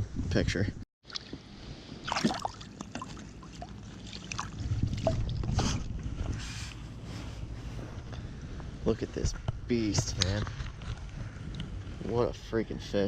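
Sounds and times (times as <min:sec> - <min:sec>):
water splashing and dribbling: 0:01.0 - 0:06.4
low steady rumble: 0:01.4 - 0:13.0
handling clicks and rustles: 0:09.1 - 0:11.8.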